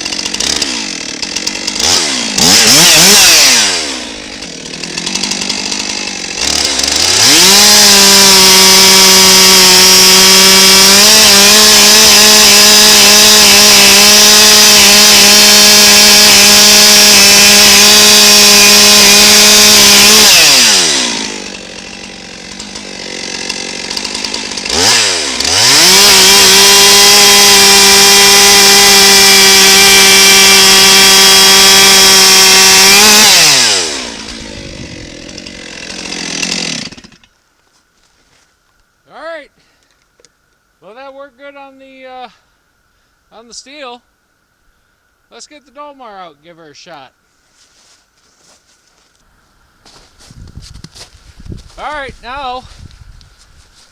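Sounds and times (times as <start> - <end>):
chainsaw cutting log: 0.0 - 37.4
chainsaw idling: 0.0 - 37.4.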